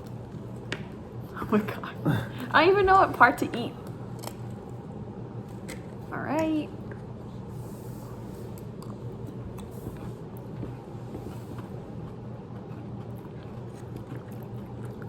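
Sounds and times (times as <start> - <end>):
steady low hum: 0.0 - 15.0
chewing: 3.8 - 4.8, 6.8 - 15.0.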